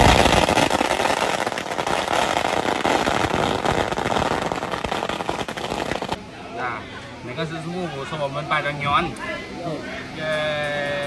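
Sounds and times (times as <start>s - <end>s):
firecrackers crackling: 0.0s - 6.3s.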